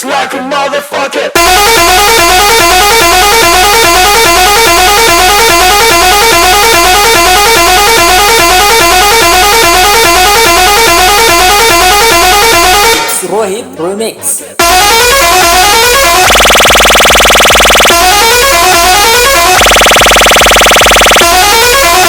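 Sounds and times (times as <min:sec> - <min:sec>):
truck horn blasts: 0:01.4 - 0:13.2, 0:14.6 - 0:16.3.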